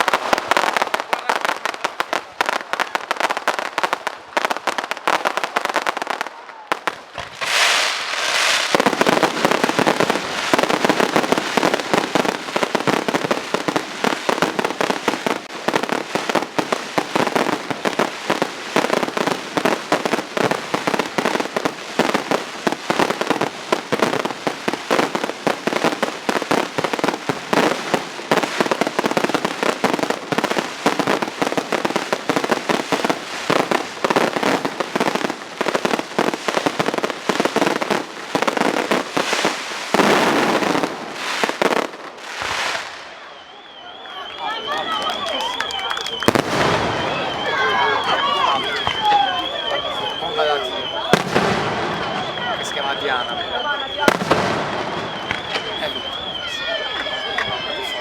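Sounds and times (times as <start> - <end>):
fireworks bangs and crackles: 0.0 - 58.0.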